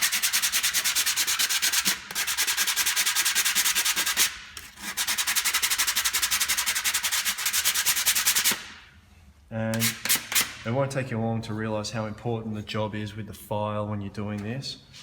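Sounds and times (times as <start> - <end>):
sandpaper rubbing on wood: 0.0 - 8.6.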